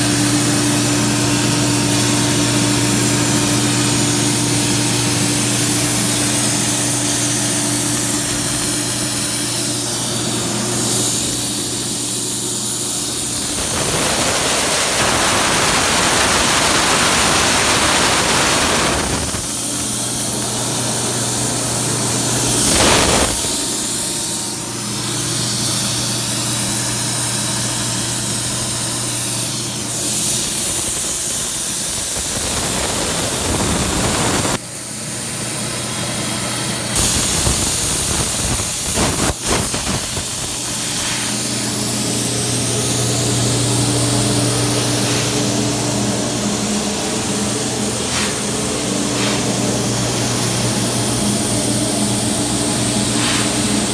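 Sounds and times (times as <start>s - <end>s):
cutting torch hissing: 0.0s - 34.6s, 36.7s - 53.9s
machine hum: 37.0s - 53.9s.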